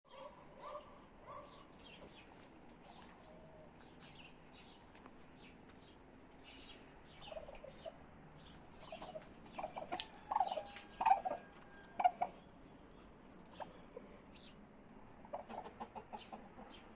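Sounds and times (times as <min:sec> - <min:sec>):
faint high chirps and peeps: 0:00.1 - 0:14.6
fowl clucking: 0:08.8 - 0:12.4, 0:15.2 - 0:16.8.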